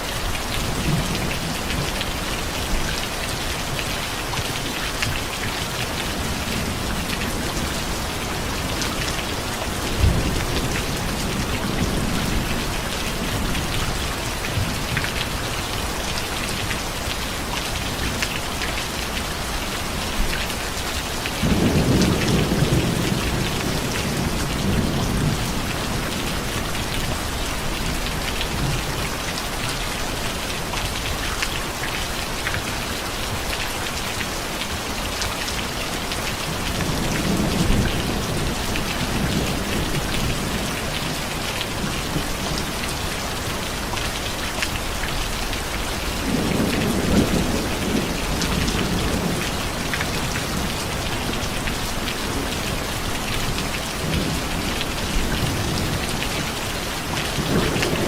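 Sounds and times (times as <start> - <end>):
heavy rain falling: 0.0 - 58.0
thunder rolling: 57.3 - 58.0.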